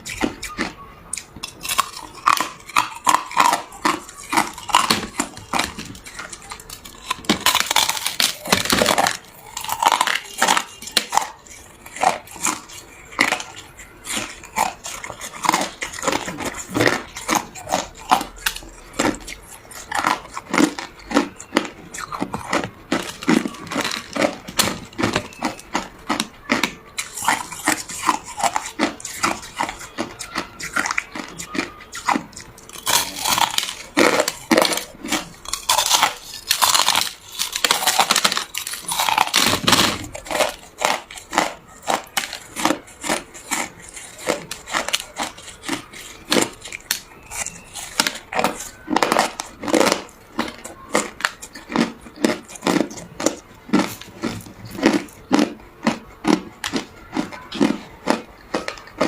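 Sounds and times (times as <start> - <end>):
ice crunching while chewed: 0.0 - 59.0.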